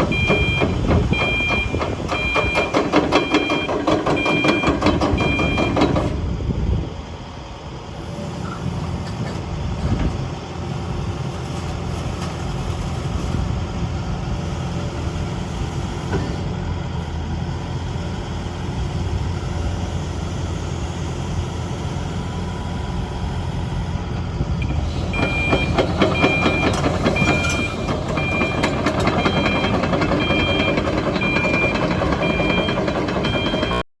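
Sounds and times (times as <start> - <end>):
high beeping alarm: 0.0 - 5.8, 25.1 - 33.8
excavator diesel engine running: 0.0 - 33.9.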